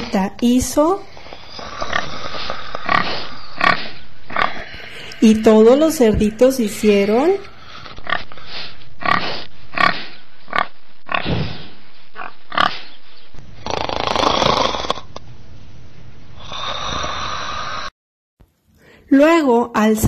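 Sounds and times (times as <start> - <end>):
piglets oinking and squealing: 1.4 - 6.2, 7.6 - 12.9.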